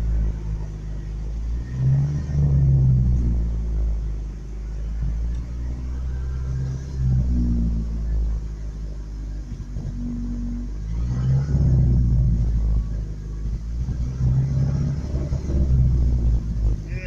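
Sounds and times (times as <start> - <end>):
truck engine running unevenly: 0.0 - 17.0.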